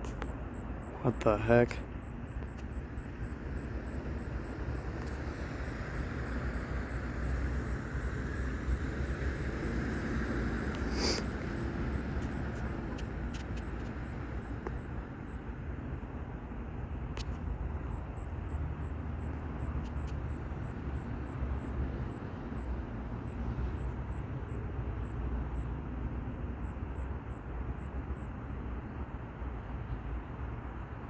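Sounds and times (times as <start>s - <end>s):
low outdoor rumble: 0.0s - 18.6s
scattered clicks: 12.2s - 14.0s.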